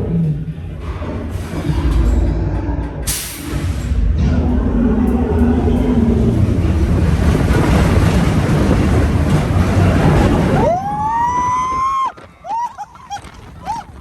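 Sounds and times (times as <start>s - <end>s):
roller coaster rushing on track: 0.0s - 14.0s
rider screaming: 10.4s - 14.0s.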